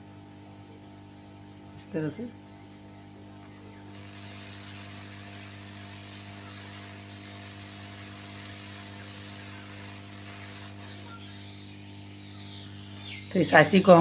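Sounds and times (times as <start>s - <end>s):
electrical hum: 0.0s - 14.0s
hot air gun hissing: 3.9s - 13.3s.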